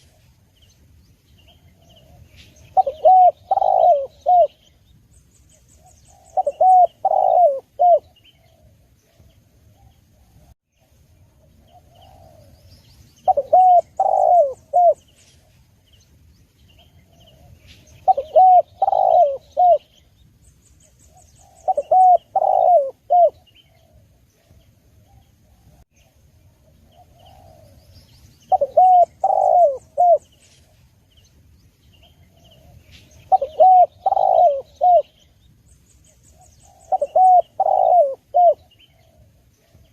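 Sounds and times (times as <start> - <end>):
small birds chirping: 0.0 - 39.9
dove cooing: 1.5 - 4.7, 5.8 - 10.5, 11.6 - 15.6, 16.8 - 20.0, 21.1 - 25.8, 26.7 - 30.8, 32.0 - 35.2, 36.2 - 39.9.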